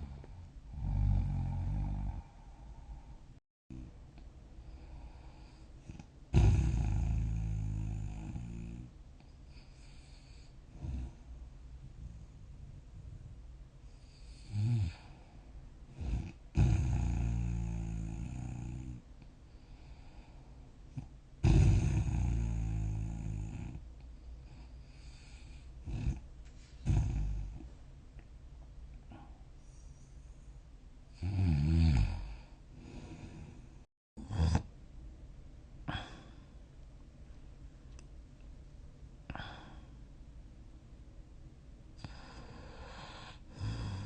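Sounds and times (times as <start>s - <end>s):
person snoring: 0.0s - 3.0s, 4.9s - 8.9s, 14.0s - 15.3s, 16.0s - 19.0s, 21.0s - 23.8s, 26.8s - 27.6s, 31.2s - 34.7s, 35.9s - 36.4s, 42.0s - 44.0s
faint breathy hiss: 42.0s - 44.0s.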